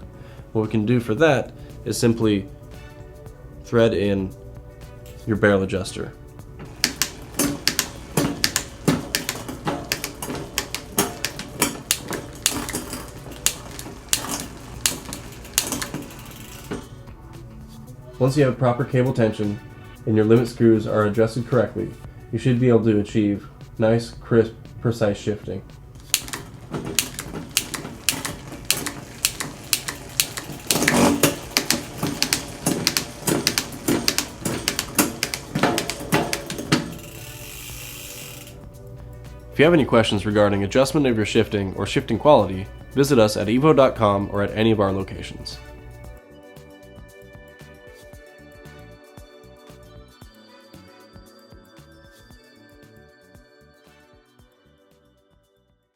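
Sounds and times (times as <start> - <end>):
bike drivetrain clicking: 6.6 - 17.2, 26.0 - 38.8.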